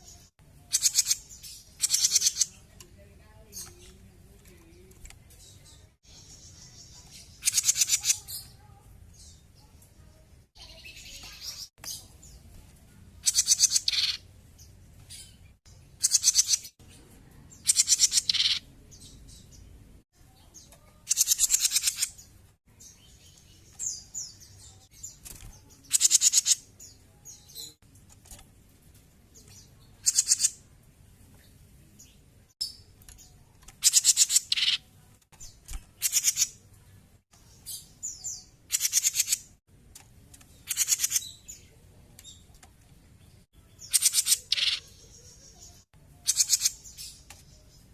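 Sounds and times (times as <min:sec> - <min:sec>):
soft bird chirps: 0:00.0 - 0:28.4, 0:29.3 - 0:47.9
bulbul singing trilled bursts: 0:00.7 - 0:02.8, 0:06.1 - 0:08.6, 0:13.2 - 0:14.2, 0:16.0 - 0:16.8, 0:17.6 - 0:19.0, 0:21.1 - 0:22.3, 0:30.0 - 0:30.6, 0:43.7 - 0:47.2.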